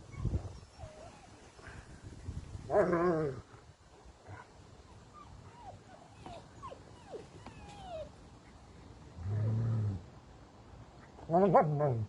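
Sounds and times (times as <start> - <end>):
dog whining: 5.2 - 8.1.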